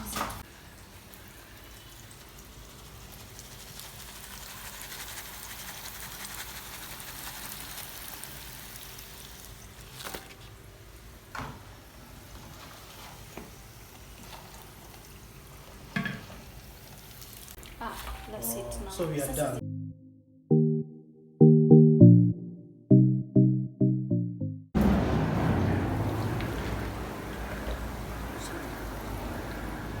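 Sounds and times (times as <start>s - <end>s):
hot oil sizzling: 0.4s - 17.9s.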